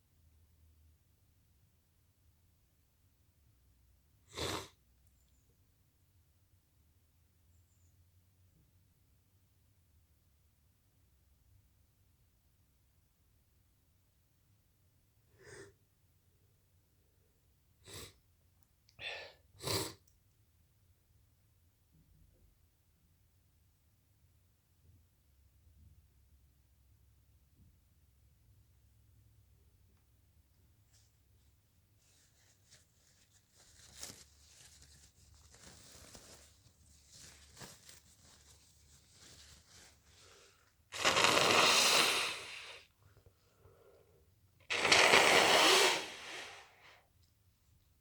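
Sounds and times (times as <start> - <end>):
faint rustling: 30.8 - 40.8
person sneezing: 41.0 - 42.8, 44.7 - 46.7.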